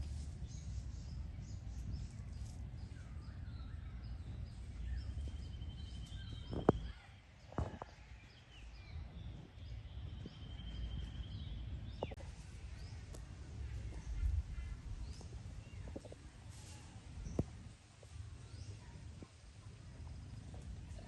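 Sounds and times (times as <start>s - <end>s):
small birds chirping: 0.0s - 21.0s.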